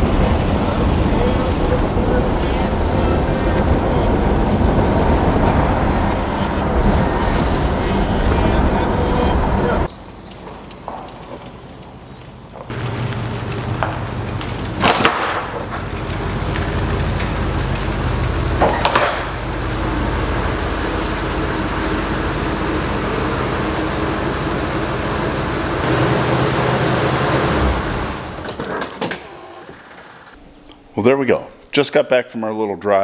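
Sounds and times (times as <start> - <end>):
car engine running: 0.0 - 9.9, 12.6 - 28.6.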